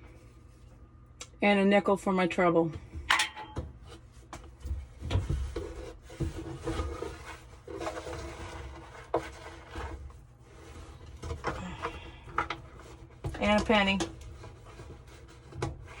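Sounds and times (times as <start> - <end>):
rubbing and scraping in duct: 3.8 - 16.0.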